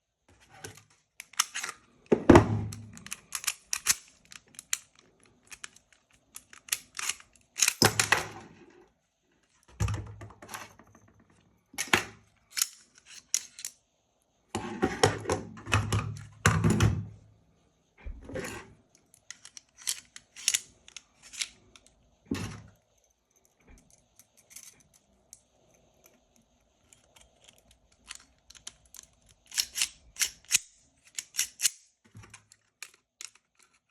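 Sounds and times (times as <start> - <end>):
pistol parts clicking and clacking: 1.2 - 8.3, 11.8 - 13.8, 19.0 - 21.9, 23.4 - 33.9
parts knocking and thudding: 9.7 - 12.2.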